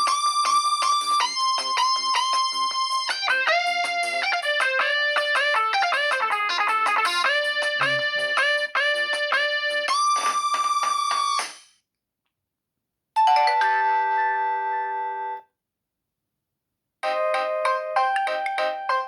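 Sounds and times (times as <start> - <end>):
fast electronic ringtone melody: 0.0 - 11.5.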